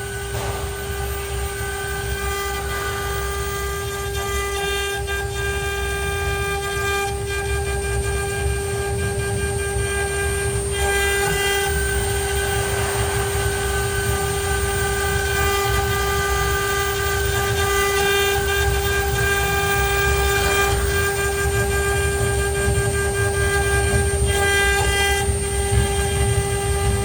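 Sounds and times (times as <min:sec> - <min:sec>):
low rumble: 0:00.0 - 0:04.4, 0:11.9 - 0:15.3
cnc router spindle whine: 0:00.0 - 0:27.0.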